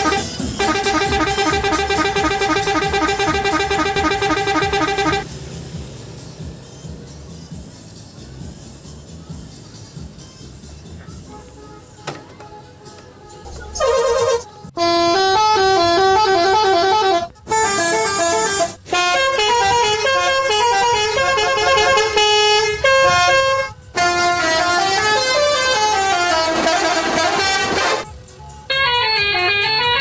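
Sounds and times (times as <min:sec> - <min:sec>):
multi-tone musical horn: 0:00.0 - 0:05.3, 0:11.2 - 0:30.0.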